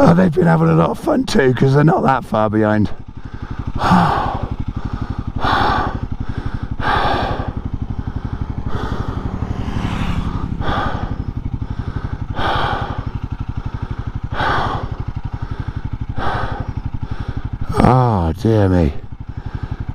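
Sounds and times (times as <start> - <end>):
motorcycle engine idling: 0.0 - 19.9
heavy breathing: 3.0 - 17.8, 19.1 - 19.9.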